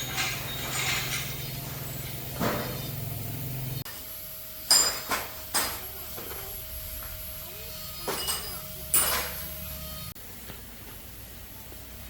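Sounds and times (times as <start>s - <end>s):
metal tools knocking: 0.0s - 1.7s, 8.0s - 9.5s
low machine hum: 0.0s - 12.0s
sharp metal clinks: 8.0s - 9.6s.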